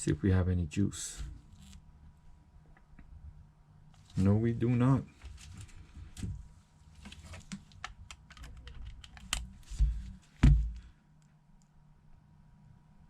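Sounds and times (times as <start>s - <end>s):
heavy thump: 9.8s - 10.9s.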